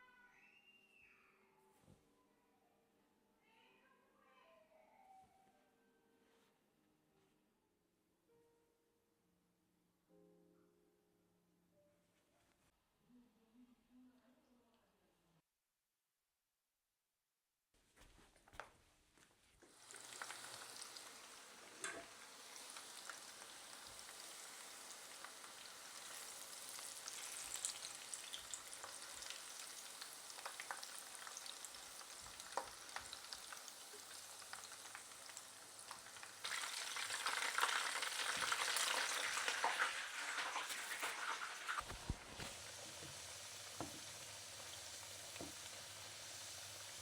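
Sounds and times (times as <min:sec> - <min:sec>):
food frying in hot oil: 0:19.7 - 0:47.0.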